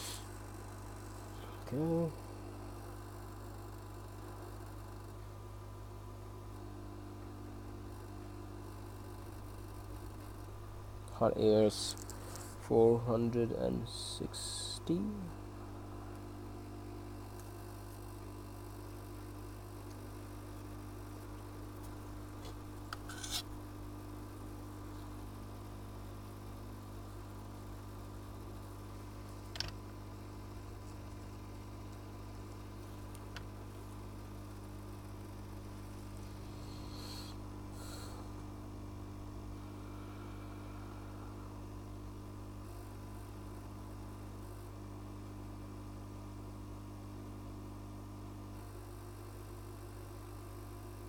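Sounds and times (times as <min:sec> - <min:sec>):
hot air rework station whirring: 0:00.0 - 0:00.5, 0:35.6 - 0:42.9.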